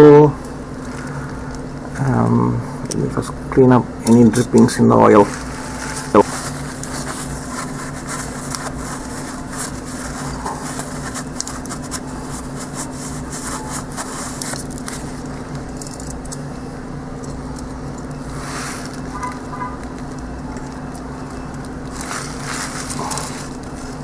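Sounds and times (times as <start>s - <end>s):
steady low hum: 0.0s - 24.0s
rag wiping and rustling: 5.0s - 16.5s, 18.1s - 24.0s.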